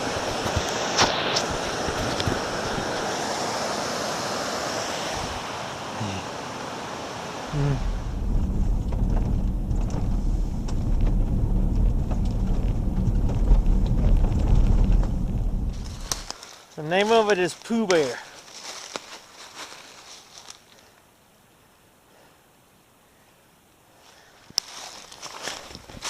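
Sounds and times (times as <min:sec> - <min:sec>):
waterfall rushing: 0:00.0 - 0:09.5
wind buffeting microphone: 0:07.5 - 0:16.3.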